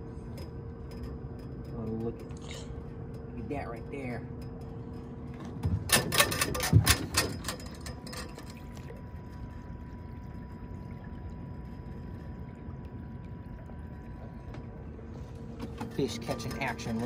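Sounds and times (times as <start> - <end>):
faint motor hum: 0.0 - 17.0
sharp knocks and rattles: 4.3 - 8.7.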